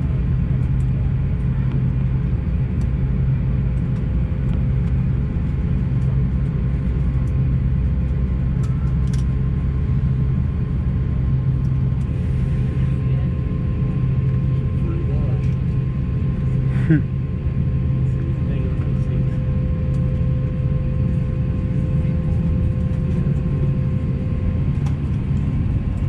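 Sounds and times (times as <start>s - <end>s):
airliner cabin rumble: 0.0s - 26.0s.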